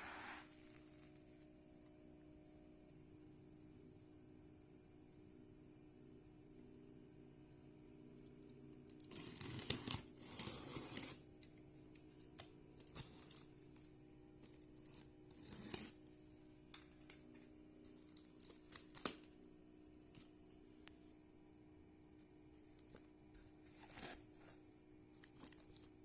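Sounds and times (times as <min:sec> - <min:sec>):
packaging tearing and crinkling: 0:09.0 - 0:11.2, 0:14.8 - 0:16.0, 0:18.1 - 0:19.3.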